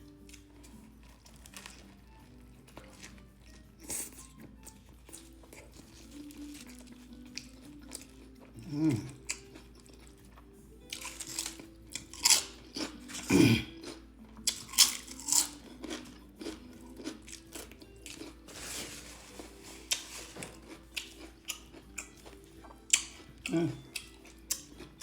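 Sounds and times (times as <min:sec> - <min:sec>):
crunchy chewing of food: 0:00.0 - 0:25.0
faint background music: 0:00.0 - 0:25.0
low hum of a voice: 0:08.6 - 0:09.2, 0:23.5 - 0:23.9.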